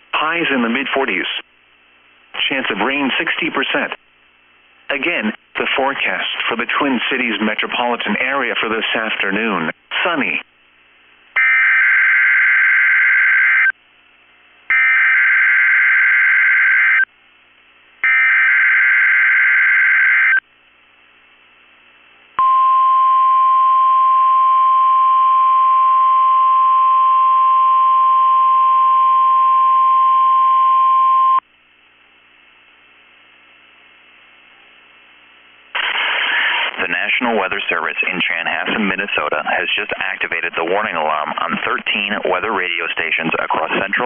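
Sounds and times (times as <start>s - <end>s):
steady warning alarm tone: 11.4s - 13.8s, 14.7s - 17.1s, 18.0s - 20.4s.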